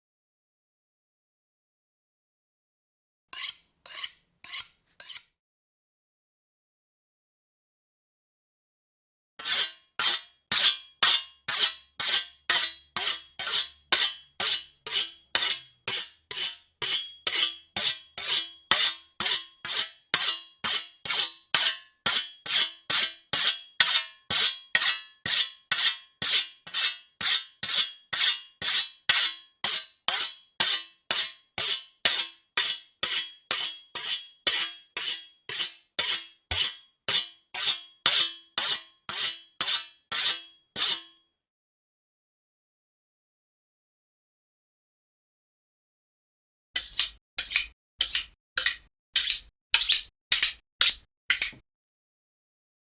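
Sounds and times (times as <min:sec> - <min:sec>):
knife rasping on sharpener: 0:03.4 - 0:05.3, 0:09.4 - 0:41.1, 0:46.8 - 0:51.6.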